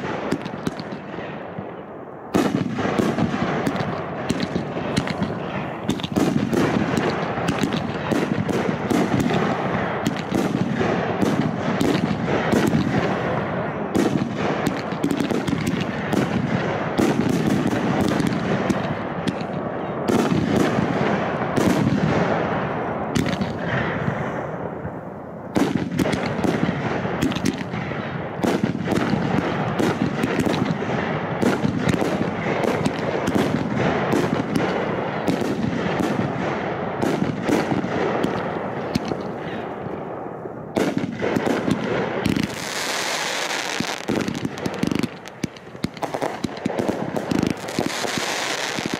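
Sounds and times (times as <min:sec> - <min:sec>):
fireworks booms and cracks: 0:00.0 - 0:48.9
fireworks rumble: 0:00.0 - 0:48.9
fireworks hissing crackle: 0:02.4 - 0:16.4, 0:40.8 - 0:48.9.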